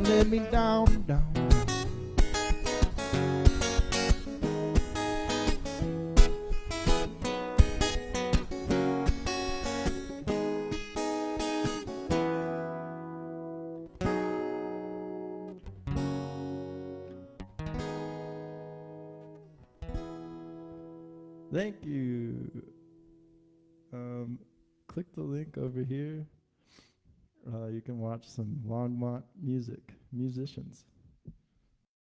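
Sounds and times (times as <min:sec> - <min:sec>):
acoustic guitar strumming: 0:00.0 - 0:23.9.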